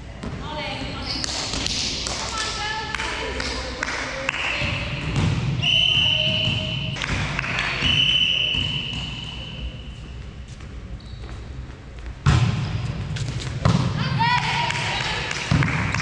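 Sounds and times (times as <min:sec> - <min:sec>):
referee whistle blasts: 0:05.6 - 0:07.0, 0:07.8 - 0:09.8.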